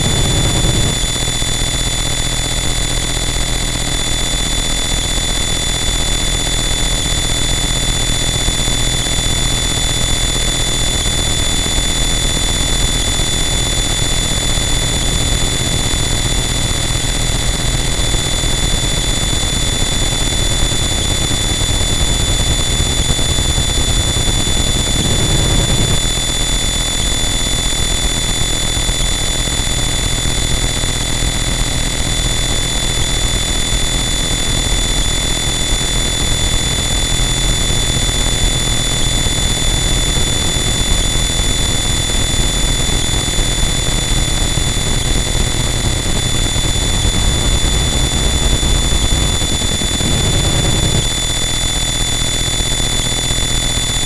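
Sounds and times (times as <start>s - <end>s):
dense static noise: 0.0s - 1.5s, 35.0s - 52.4s.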